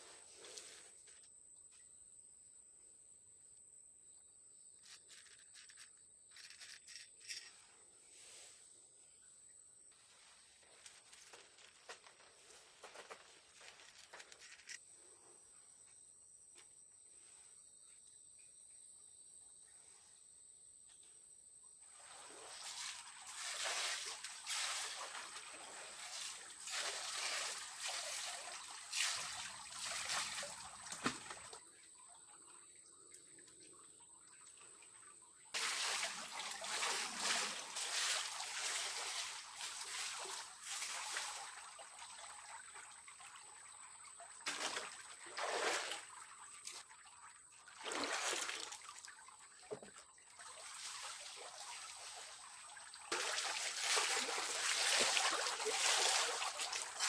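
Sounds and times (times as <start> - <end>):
high-pitched insect call: 4.0 - 7.7
water splashing and trickling: 9.9 - 14.8, 21.8 - 57.0.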